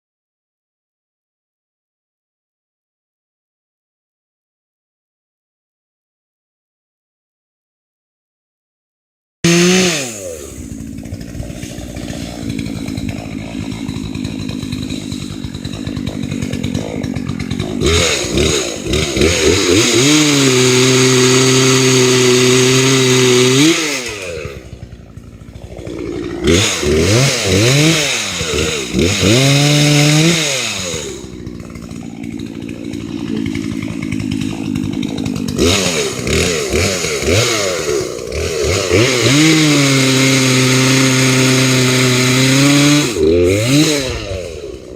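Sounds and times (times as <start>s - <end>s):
chainsaw revving: 9.4s - 44.9s.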